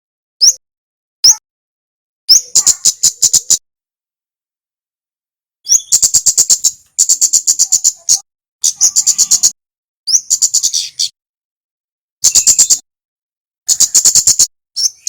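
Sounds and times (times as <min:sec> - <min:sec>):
songbird ticking song: 0:02.3 - 0:03.6, 0:05.6 - 0:11.2, 0:12.2 - 0:12.9, 0:13.7 - 0:15.0.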